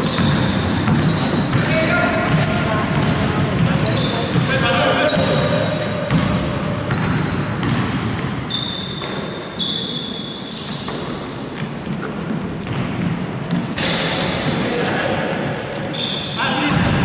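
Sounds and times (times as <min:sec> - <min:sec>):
shoes squeaking on hardwood: 0:00.0 - 0:01.8, 0:08.5 - 0:14.8
ball bouncing: 0:00.0 - 0:09.4, 0:10.6 - 0:14.6, 0:16.6 - 0:17.0.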